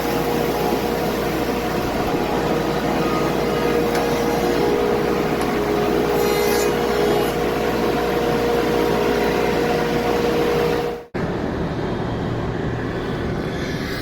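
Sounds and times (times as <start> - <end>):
machine running hum: 0.0 - 14.0
steady rumble: 10.9 - 14.0.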